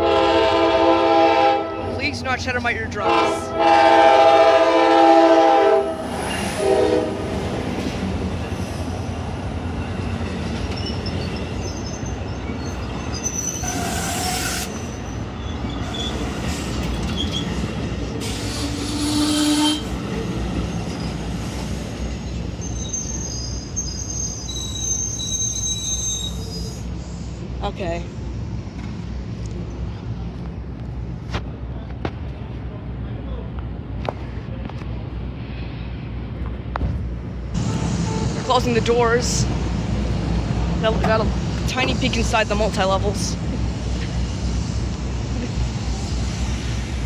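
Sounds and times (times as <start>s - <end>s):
train horn blasts: 0.0s - 2.1s, 3.0s - 7.3s, 18.2s - 20.0s, 37.6s - 38.6s
passenger train rumbling: 0.0s - 47.0s
high-pitched metal squeals: 10.7s - 15.2s, 18.2s - 19.9s, 22.6s - 26.9s.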